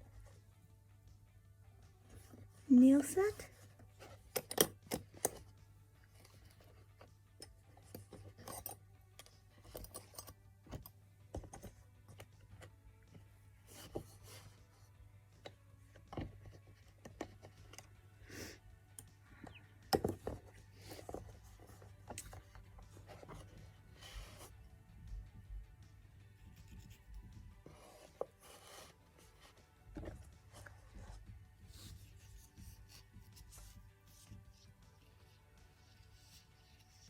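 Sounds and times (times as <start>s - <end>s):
metal manicure tools clinking: 4.2s - 5.4s, 7.4s - 11.7s.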